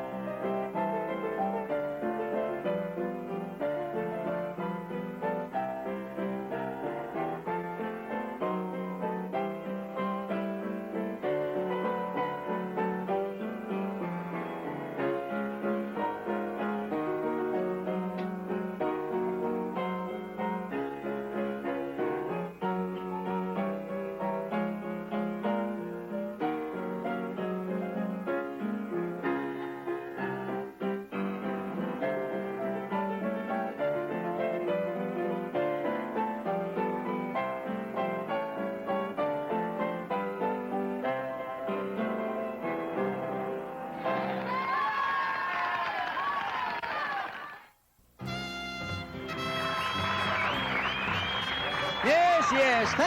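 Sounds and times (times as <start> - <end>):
piano-like keyboard music: 0.0 - 44.8, 48.2 - 53.0
keyboard music: 48.2 - 53.0.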